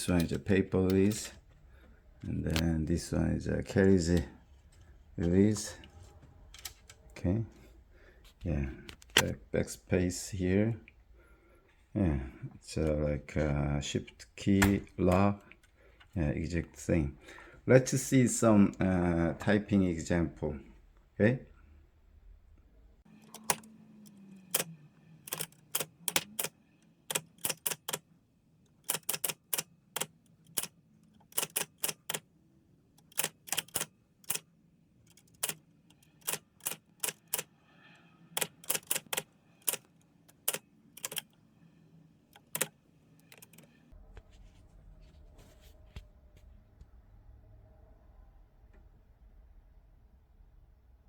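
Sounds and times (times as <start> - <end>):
typewriter key strikes: 25.3 - 26.5, 27.1 - 28.0, 28.9 - 32.2, 33.0 - 34.4, 38.4 - 39.8, 40.4 - 41.3, 42.4 - 42.7.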